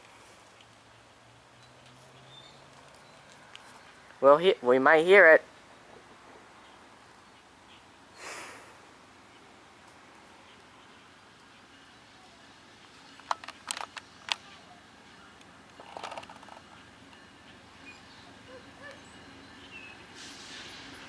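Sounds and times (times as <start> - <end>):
brief rustle: 15.7 - 16.8.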